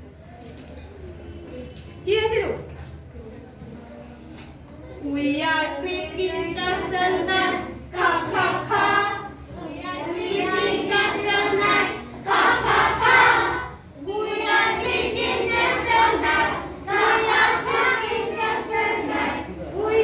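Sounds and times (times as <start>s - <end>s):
children singing in unison: 6.5s - 20.0s.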